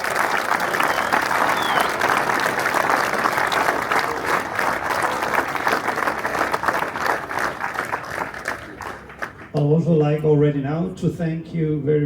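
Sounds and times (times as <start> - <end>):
audience applauding: 0.0 - 9.6.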